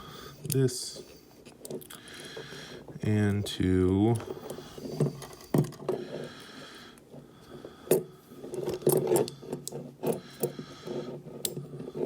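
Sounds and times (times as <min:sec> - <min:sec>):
lock picks clicking and scraping: 0:04.0 - 0:06.3, 0:07.8 - 0:12.0.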